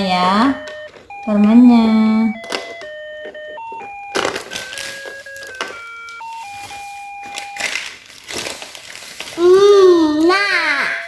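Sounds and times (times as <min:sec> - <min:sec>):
electronic beeping melody: 0:00.0 - 0:07.9.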